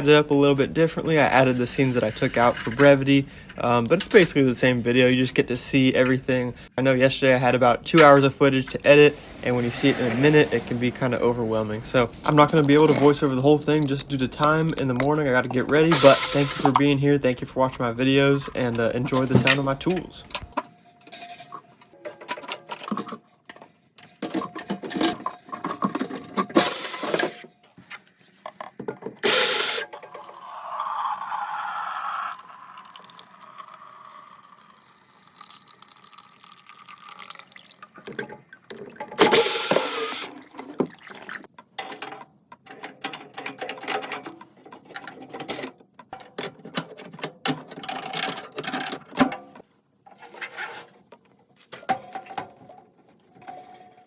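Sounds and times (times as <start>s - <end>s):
running water: 8.8s - 13.3s, 30.2s - 41.5s
loud rushing bursts: 8.9s - 12.3s
clanks and knocks of tools: 18.4s - 30.3s, 41.5s - 54.0s.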